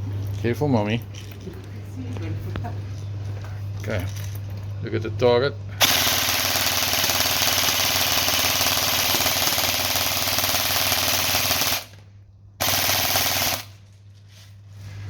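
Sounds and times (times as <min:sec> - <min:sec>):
airsoft gun full auto firing: 0:05.8 - 0:12.0, 0:12.6 - 0:13.8.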